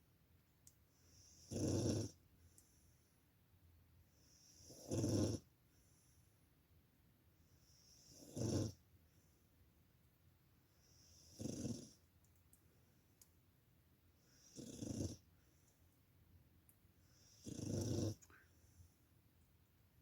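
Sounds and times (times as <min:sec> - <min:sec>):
dog snoring: 0:01.1 - 0:02.2, 0:04.2 - 0:05.5, 0:07.6 - 0:08.8, 0:10.8 - 0:12.0, 0:14.2 - 0:15.3, 0:17.1 - 0:18.4.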